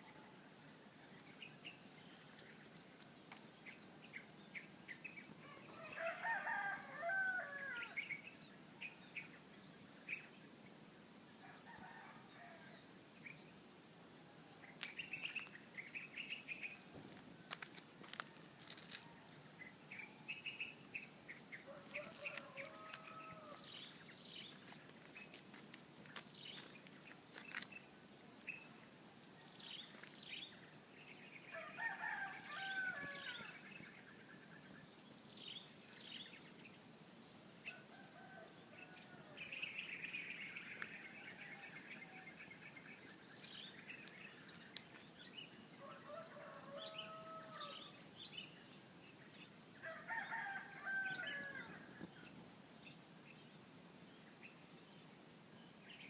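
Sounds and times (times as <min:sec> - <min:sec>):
rooster crowing: 0:05.4 - 0:08.0, 0:21.7 - 0:23.7, 0:31.5 - 0:33.6, 0:45.8 - 0:47.9, 0:49.8 - 0:51.8
small birds chirping: 0:14.6 - 0:19.0.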